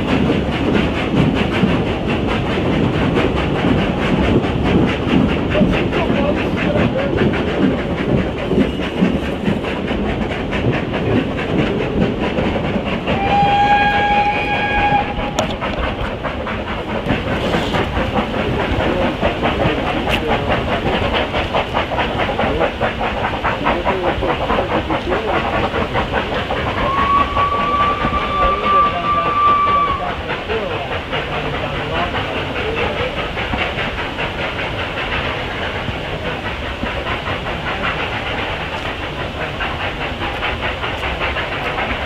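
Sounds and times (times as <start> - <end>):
steam locomotive exhaust chuffs: 0.0 - 42.0
steam whistle: 13.2 - 15.4, 26.8 - 30.1.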